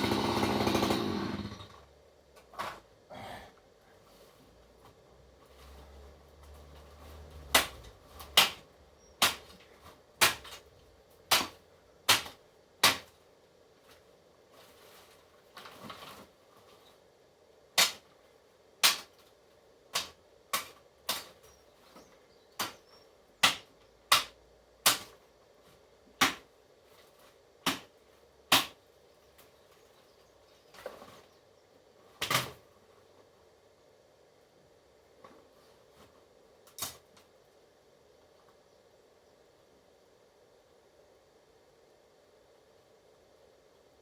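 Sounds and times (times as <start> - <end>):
sharp cracks or snaps: 17.8 - 18.1, 18.8 - 19.2.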